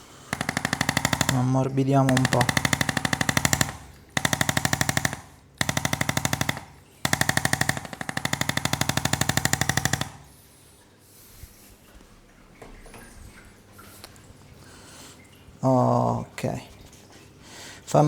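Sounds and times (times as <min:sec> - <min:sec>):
massage gun hammering: 0:00.0 - 0:10.4.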